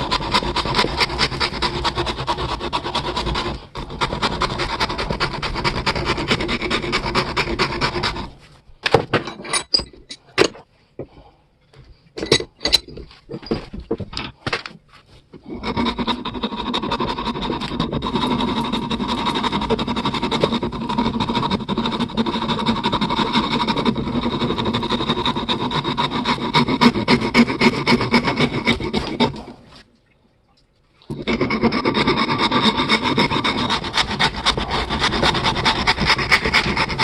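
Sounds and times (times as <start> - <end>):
rapid scraping on metal: 0.0 - 8.4, 15.4 - 29.5, 31.1 - 37.0.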